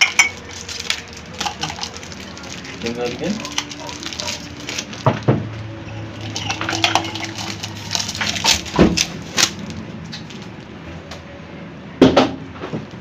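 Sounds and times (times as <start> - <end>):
dishes and utensils clinking: 0.0 - 9.5.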